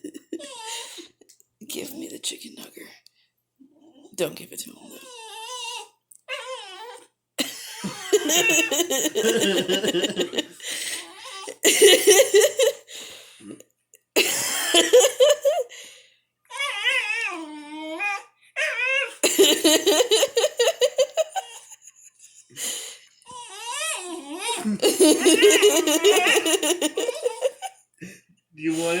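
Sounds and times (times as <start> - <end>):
dog whining: 5.0 - 7.1, 16.5 - 19.2
people laughing: 7.4 - 10.7, 11.6 - 12.9, 14.2 - 15.7, 19.2 - 21.5, 24.6 - 27.7.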